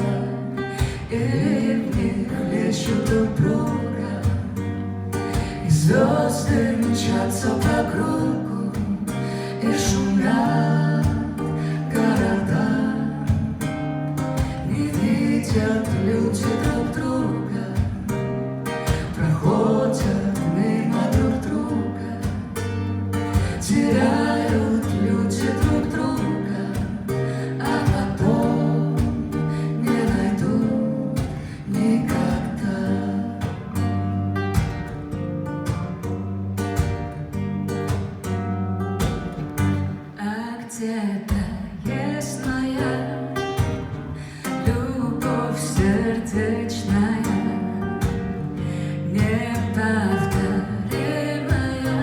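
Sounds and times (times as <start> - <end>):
acoustic guitar strumming: 0.0 - 40.5, 41.3 - 52.0.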